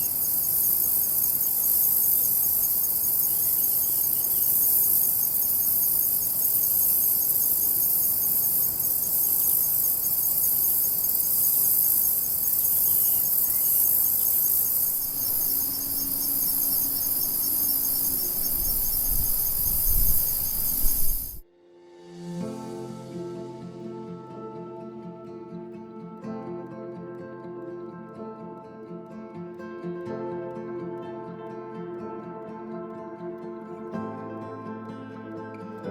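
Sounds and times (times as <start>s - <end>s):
insect chorus shrilling: 0.0s - 21.4s.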